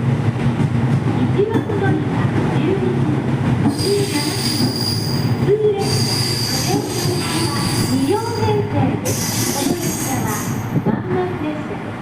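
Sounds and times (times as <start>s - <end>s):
train rumbling on rails: 0.0s - 12.0s
high wheel squeal: 3.7s - 8.5s, 9.1s - 10.6s.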